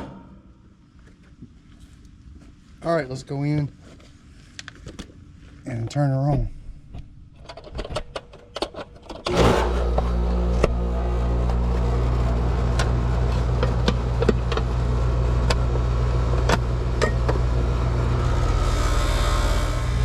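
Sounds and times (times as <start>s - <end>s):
heat pump unit humming: 9.2s - 20.0s.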